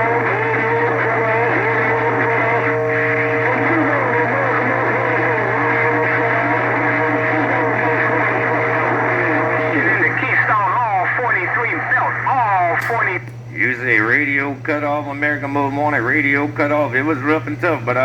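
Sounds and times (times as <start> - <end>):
distorted radio voices: 0.0 - 18.0
radio hum: 0.0 - 18.0.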